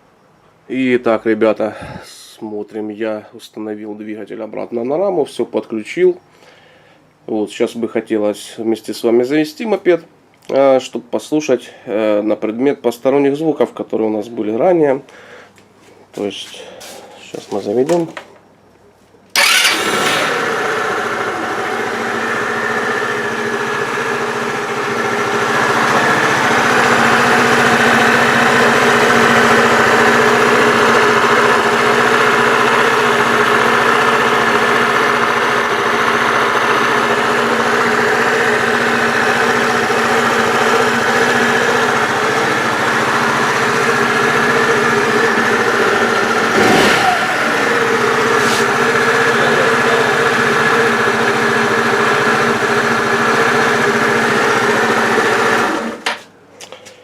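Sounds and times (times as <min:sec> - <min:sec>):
scooter engine idling: 0:19.3 - 0:56.0.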